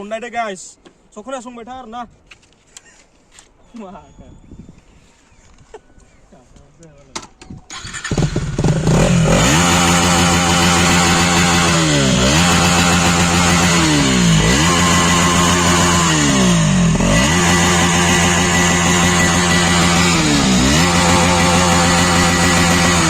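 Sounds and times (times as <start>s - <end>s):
loud motorcycle engine running: 7.9s - 23.0s.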